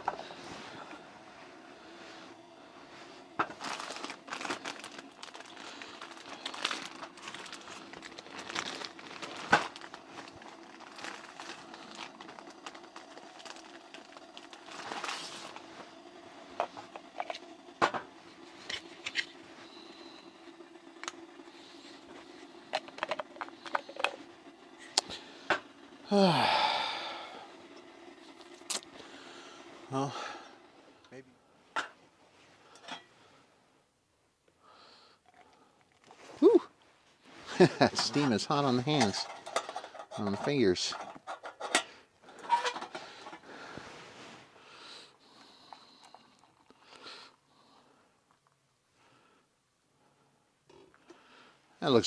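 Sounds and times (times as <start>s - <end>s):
faint steady hum: 0.0s - 52.0s
packaging crinkling and rustling: 3.3s - 15.7s.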